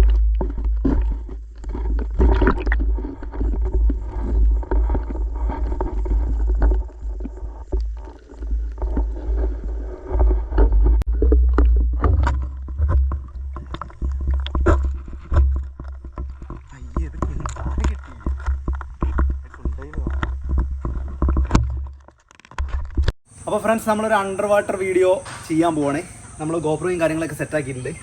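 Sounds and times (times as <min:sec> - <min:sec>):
muffled underwater rumble: 0:00.0 - 0:22.1.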